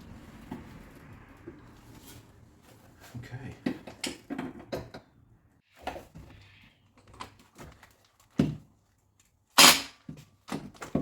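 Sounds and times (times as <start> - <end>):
short rasping burst: 9.6 - 9.9.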